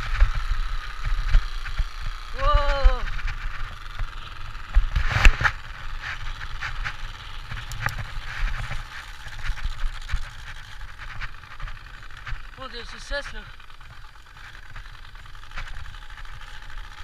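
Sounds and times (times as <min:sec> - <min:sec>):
bicycle rumble and rattles: 0:00.0 - 0:17.0
simulated motorcycle engine: 0:00.0 - 0:17.0.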